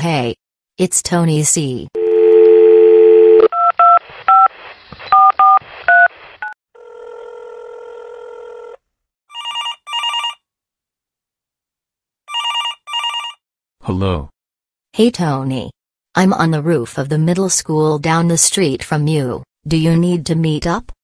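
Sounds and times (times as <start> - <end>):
telephone dial tone: 2.0 - 3.9, 6.8 - 8.8, 9.4 - 10.4
steady phone tone: 2.0 - 4.0, 9.3 - 10.4, 12.3 - 13.4
electronic phone ringing: 2.0 - 4.4, 9.3 - 10.4, 12.3 - 13.4.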